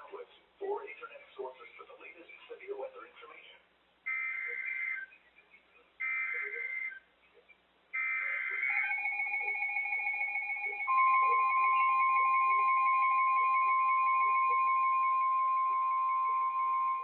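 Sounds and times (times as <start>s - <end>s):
harsh electronic data warbles: 6.0s - 7.0s, 8.0s - 14.8s
louder steady tone: 9.0s - 17.0s.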